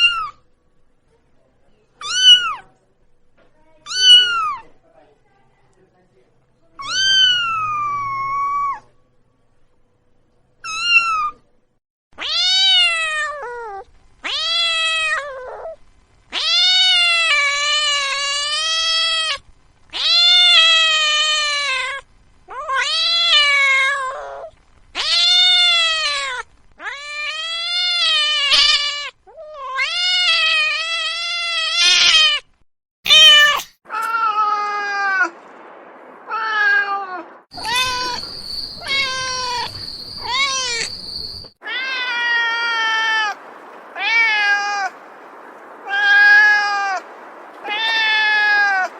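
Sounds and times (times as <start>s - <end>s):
cat meowing: 0.0s - 0.4s, 2.0s - 2.7s, 3.9s - 4.6s, 6.8s - 8.9s, 10.6s - 11.4s, 12.2s - 19.4s, 20.0s - 32.4s, 33.1s - 35.3s, 36.3s - 43.4s, 44.0s - 44.9s, 45.8s - 47.0s, 47.6s - 48.9s.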